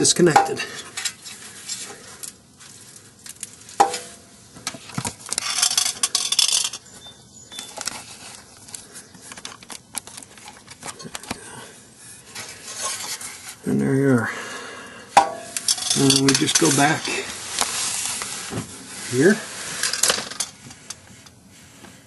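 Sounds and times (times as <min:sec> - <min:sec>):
metal clinks and knocks: 0:15.2 - 0:17.2
hand tools handled: 0:15.2 - 0:18.3.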